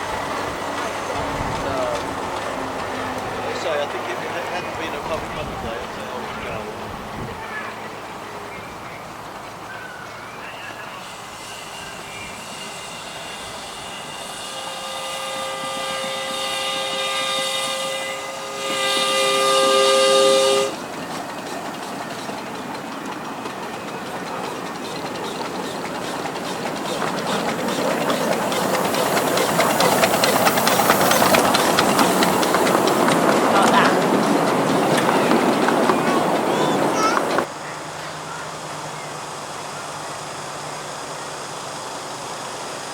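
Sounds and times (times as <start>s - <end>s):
train clattering: 0.0s - 42.9s
steam locomotive chime whistle: 9.6s - 20.9s, 26.4s - 34.1s.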